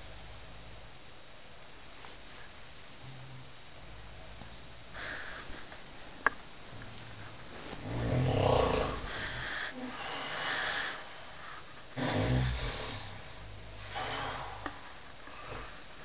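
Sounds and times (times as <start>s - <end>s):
breathy hiss: 0.0s - 16.0s
man snoring: 7.8s - 11.1s, 12.0s - 14.8s.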